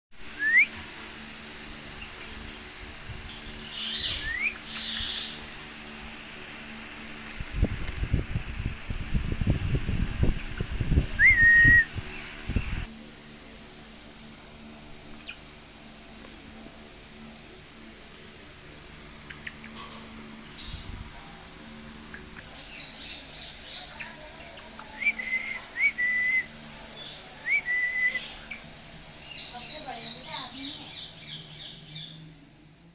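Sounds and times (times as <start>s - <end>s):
parrot rising whistles: 0.3s - 0.8s, 3.8s - 5.0s, 11.2s - 11.9s, 25.0s - 26.6s, 27.4s - 28.3s.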